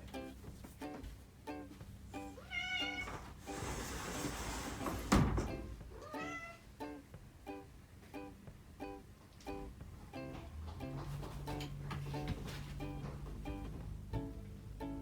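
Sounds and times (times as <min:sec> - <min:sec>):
rustling: 0:00.0 - 0:06.4
plucked-string background music: 0:00.0 - 0:15.0
cat meowing: 0:02.4 - 0:03.2, 0:05.9 - 0:06.7
thump: 0:04.8 - 0:05.8.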